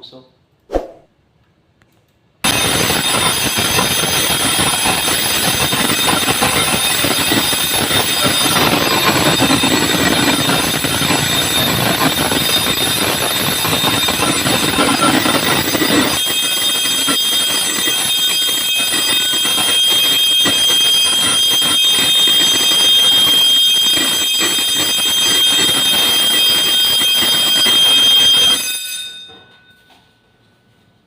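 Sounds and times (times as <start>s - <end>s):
fire alarm ringing: 2.4s - 30.5s.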